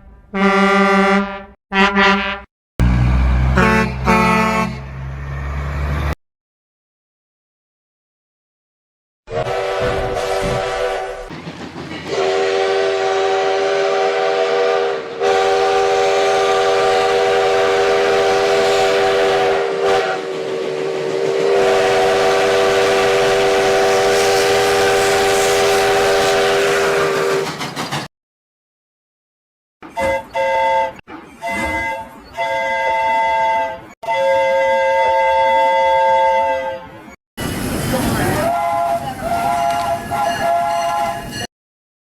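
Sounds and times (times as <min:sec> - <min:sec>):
steam locomotive whistle: 0:00.4 - 0:04.9, 0:09.3 - 0:11.3, 0:12.1 - 0:27.6, 0:29.9 - 0:37.0, 0:38.2 - 0:41.5
steam hissing: 0:18.2 - 0:28.1, 0:37.4 - 0:41.2.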